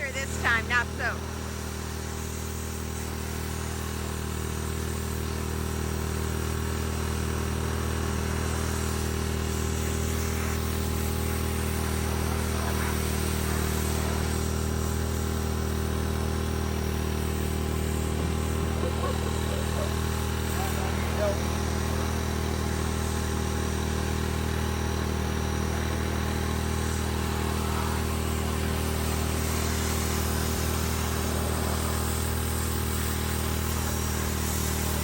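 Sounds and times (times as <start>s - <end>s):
motor hum: 0.0s - 35.0s
water spray hissing: 8.4s - 23.9s, 26.6s - 35.0s.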